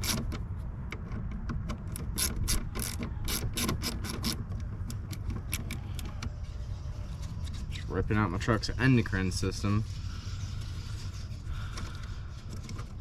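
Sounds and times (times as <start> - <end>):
hand ratchet clicking: 0.0 - 0.3, 1.9 - 6.0.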